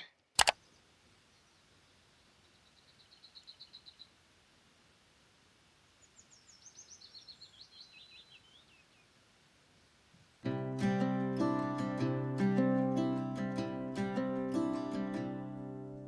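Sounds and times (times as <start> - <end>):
faint songbird song: 0.0 - 4.4, 5.8 - 10.5.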